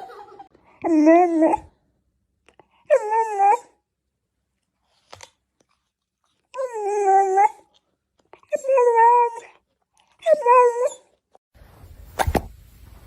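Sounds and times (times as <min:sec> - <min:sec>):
dog whining: 0:02.8 - 0:03.8, 0:06.5 - 0:07.7, 0:08.4 - 0:09.6, 0:10.2 - 0:11.2.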